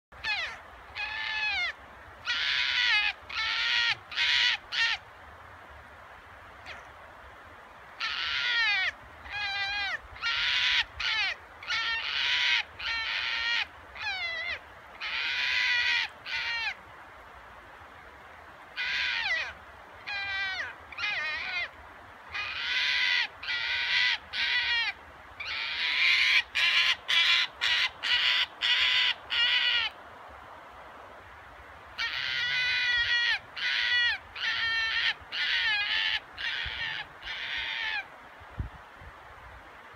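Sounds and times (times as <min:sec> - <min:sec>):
fox rough calls: 0:00.2 - 0:05.0, 0:08.0 - 0:16.8, 0:18.8 - 0:21.7, 0:32.0 - 0:38.1.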